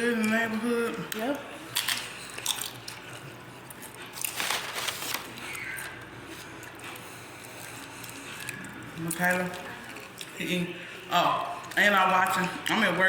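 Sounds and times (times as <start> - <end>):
chewing and wet mouth noises: 0.2 - 4.2, 5.4 - 10.6.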